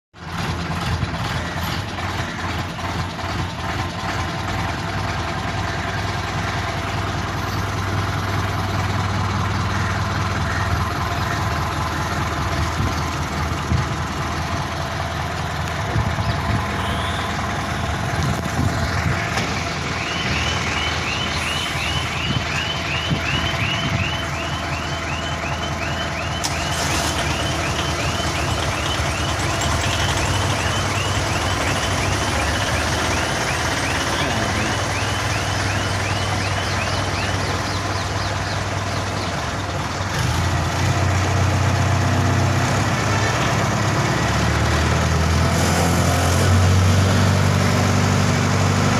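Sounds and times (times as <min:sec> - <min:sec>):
diesel generator running: 0:00.2 - 0:48.9
high repeated beeping: 0:19.7 - 0:26.5, 0:27.3 - 0:37.8.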